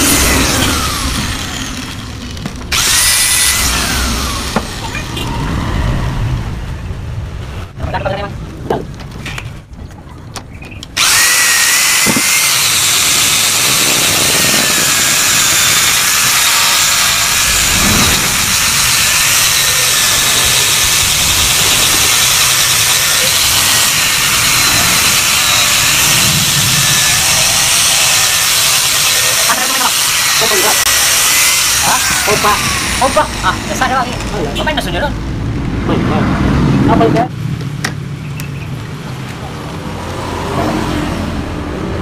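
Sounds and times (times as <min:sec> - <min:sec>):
angle grinder grinding steel: 0:00.0 - 0:05.4, 0:11.0 - 0:34.7.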